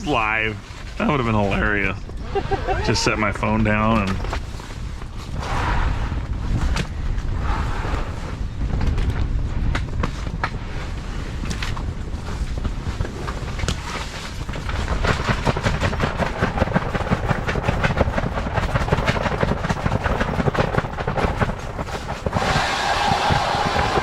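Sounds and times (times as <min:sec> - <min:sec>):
wind buffeting microphone: 0:00.0 - 0:24.0
rapid rattling clatter: 0:09.9 - 0:24.0.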